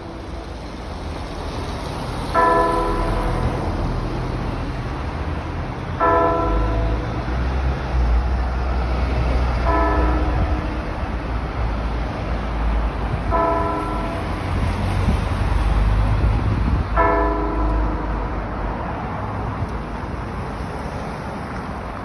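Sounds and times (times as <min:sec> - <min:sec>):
church bell ringing: 0:00.0 - 0:00.8, 0:02.3 - 0:04.6, 0:06.0 - 0:07.6, 0:09.6 - 0:11.3, 0:13.3 - 0:14.6, 0:17.0 - 0:18.6.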